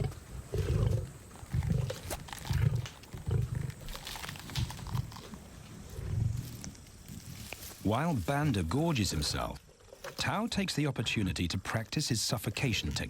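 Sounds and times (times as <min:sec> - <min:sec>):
lions growling: 0:00.0 - 0:03.9
clicks and cracks of eating: 0:01.5 - 0:05.4.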